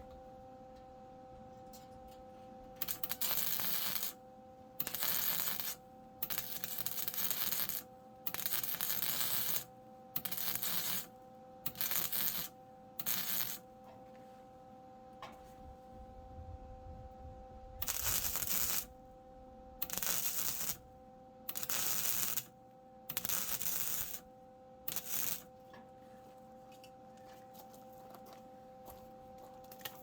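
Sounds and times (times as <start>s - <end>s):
welder crackling: 2.8s - 4.2s, 4.8s - 11.1s, 11.7s - 13.6s, 17.8s - 19.0s, 19.8s - 20.8s, 21.5s - 22.5s, 23.1s - 24.3s, 24.9s - 25.5s.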